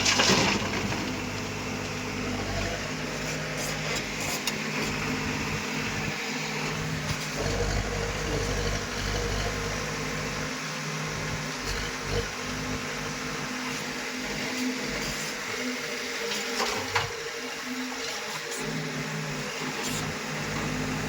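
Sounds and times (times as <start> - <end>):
heavy machine engine running: 0.0 - 17.2, 18.0 - 21.0.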